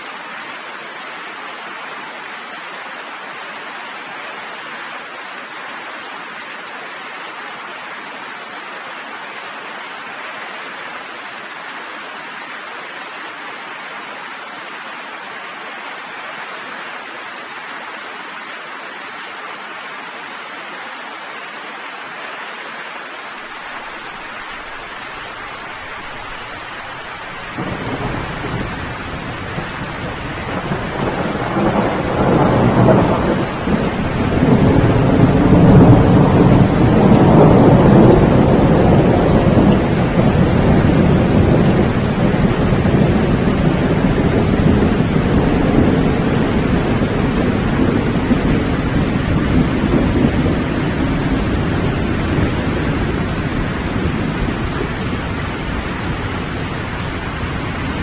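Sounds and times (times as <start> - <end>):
steady rain: 0.0 - 58.0
low roll of thunder: 27.4 - 58.0.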